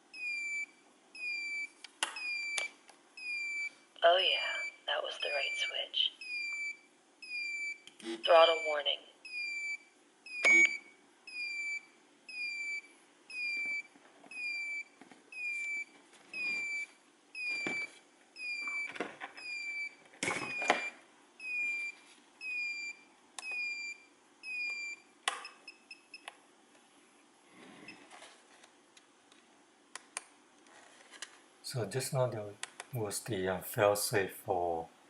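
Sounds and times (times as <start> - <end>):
short electronic beeps: 10.3 - 12.5.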